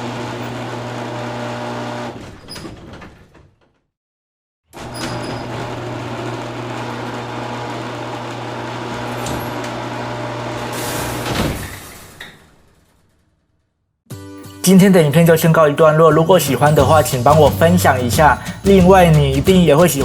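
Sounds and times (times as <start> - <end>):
mechanical hum: 4.8 - 11.8.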